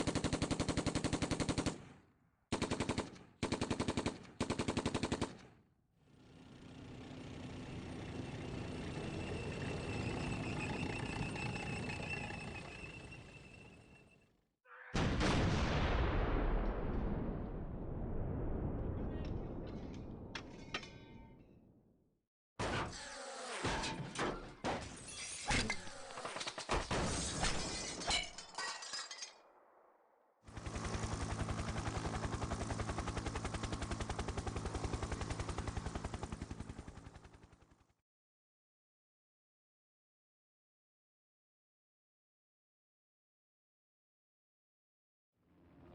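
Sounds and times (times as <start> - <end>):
machine-gun automatic fire: 0.0 - 1.9, 2.5 - 5.5
rumbling boom: 15.0 - 20.4.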